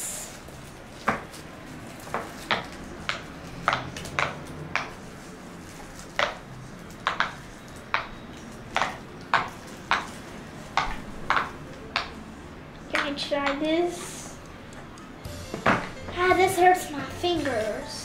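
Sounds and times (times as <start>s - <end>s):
plastic toys clicking and tapping: 6.0s - 12.2s, 12.9s - 13.8s.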